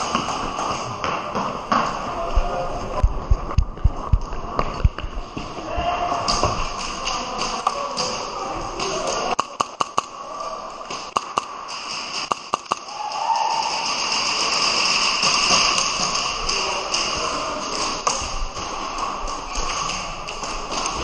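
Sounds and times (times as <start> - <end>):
background hubbub: 0.0 - 21.0
low thumps: 2.2 - 6.8.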